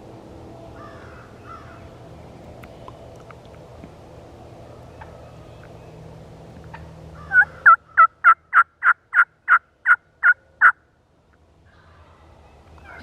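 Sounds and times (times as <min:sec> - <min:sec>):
wild turkey yelping: 0:06.7 - 0:10.8.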